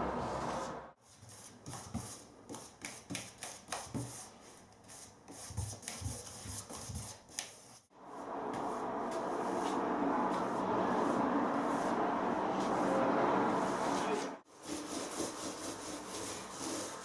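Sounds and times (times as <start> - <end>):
hand rubbing on a surface: 8.5 - 17.0.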